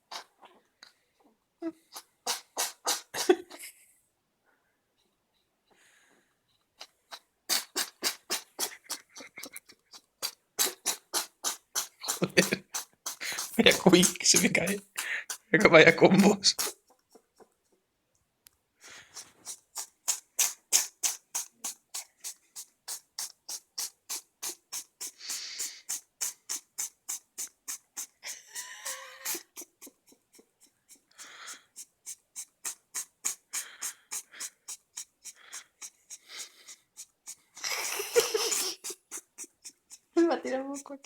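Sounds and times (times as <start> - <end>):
cat snorting: 0.0 - 0.4, 1.7 - 3.4, 6.8 - 17.4, 18.9 - 41.0
cat clicking snuffles: 1.9 - 3.2, 6.8 - 16.8, 19.0 - 28.3, 29.3 - 40.2.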